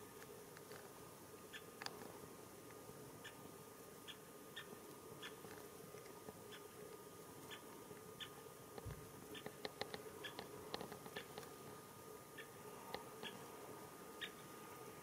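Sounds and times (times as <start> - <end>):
woodpecker kik calls: 1.5 - 1.9, 3.2 - 3.4, 4.0 - 5.6, 6.5 - 6.8, 7.4 - 8.4, 9.3 - 11.5, 12.3 - 12.6, 13.2 - 13.4.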